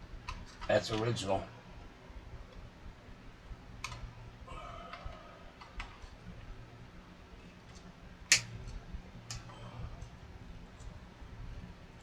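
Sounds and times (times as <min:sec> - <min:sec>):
steady low hum: 0:00.0 - 0:12.0
small tools clicking on metal: 0:08.3 - 0:08.5.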